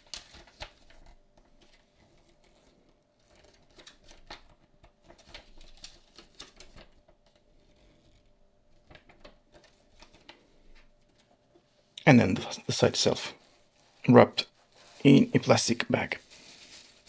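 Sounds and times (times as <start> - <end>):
packaging rustling: 0.0 - 11.4, 13.4 - 17.0.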